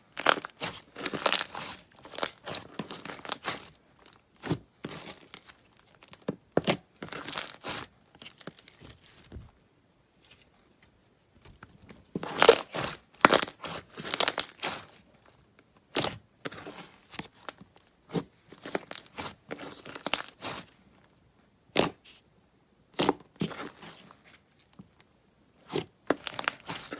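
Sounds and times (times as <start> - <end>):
slime crackling and popping: 0.1 - 8.7, 12.2 - 14.9, 18.6 - 20.7, 25.6 - 26.9.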